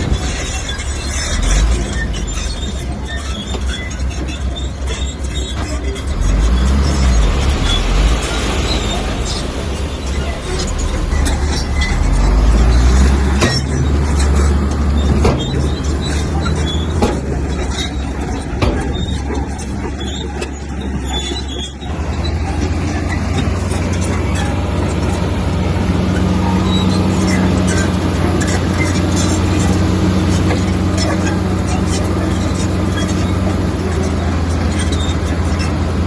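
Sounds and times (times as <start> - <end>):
bulldozer diesel engine running: 0.0 - 36.0
sharp metallic clanks: 10.1 - 25.2.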